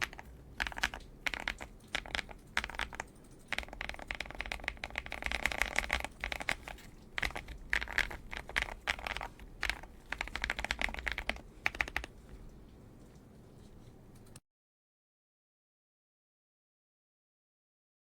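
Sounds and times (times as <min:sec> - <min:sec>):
mechanical keyboard typing: 0:00.0 - 0:12.3.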